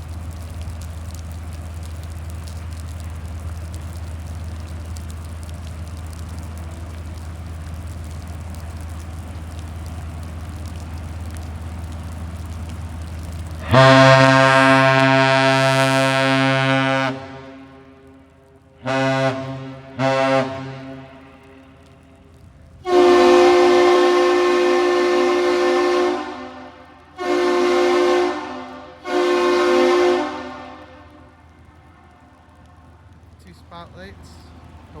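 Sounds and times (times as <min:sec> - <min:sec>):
ship horn blasts: 0:13.5 - 0:32.6
higher-pitched horn blasts: 0:13.6 - 0:18.1, 0:18.8 - 0:21.7, 0:22.9 - 0:31.4.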